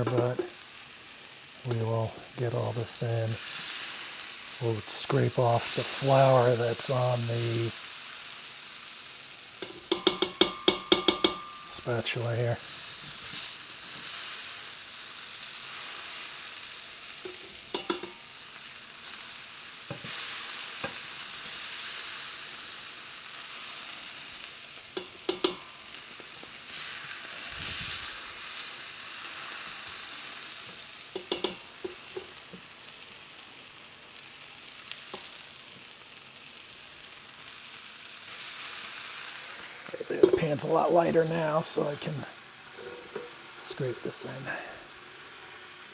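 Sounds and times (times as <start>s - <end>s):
meat sizzling in a pan: 0.0s - 45.9s
spatula knocking against pan: 9.6s - 11.6s, 17.3s - 18.2s, 25.0s - 25.7s, 31.2s - 32.3s
spatula scraping a pan: 42.7s - 44.4s.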